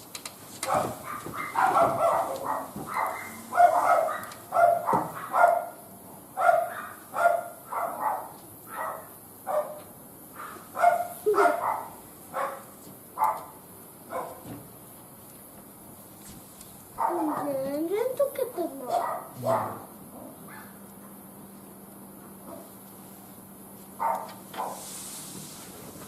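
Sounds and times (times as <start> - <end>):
dog barking: 0.6 - 5.8, 6.4 - 14.5, 17.0 - 17.6, 18.9 - 20.8, 22.5 - 22.7, 24.0 - 24.8.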